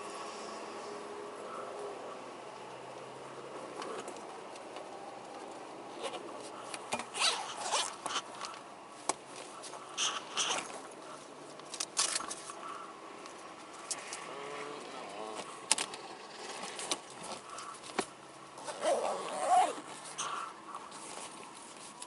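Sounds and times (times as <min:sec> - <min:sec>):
small clicks and handling noises: 0:02.6 - 0:18.9
bag zipper rasping: 0:07.1 - 0:08.2, 0:18.6 - 0:20.4.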